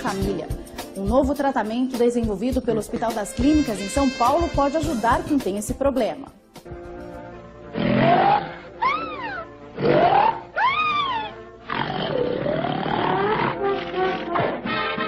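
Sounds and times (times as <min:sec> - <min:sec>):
background music: 0:00.0 - 0:15.0
person snoring loudly: 0:07.7 - 0:10.5, 0:11.6 - 0:14.6.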